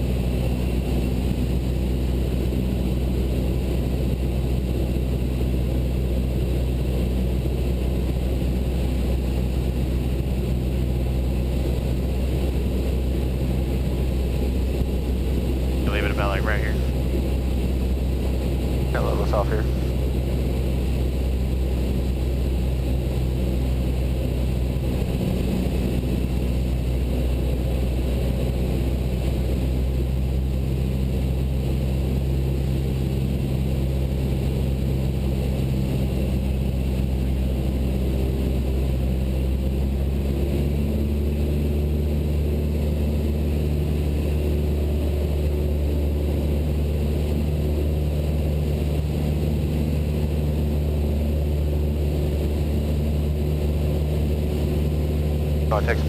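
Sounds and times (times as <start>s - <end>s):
airplane engine and propeller droning: 0.0s - 56.0s.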